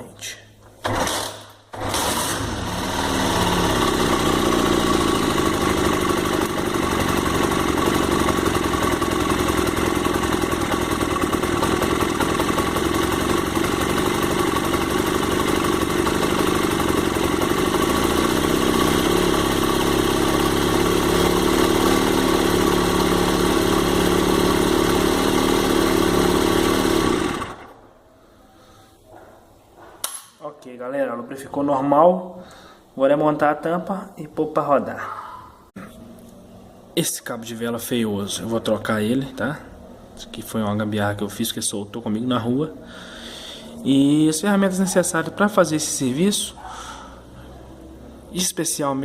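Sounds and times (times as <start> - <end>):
motorcycle engine idling: 3.1 - 27.7.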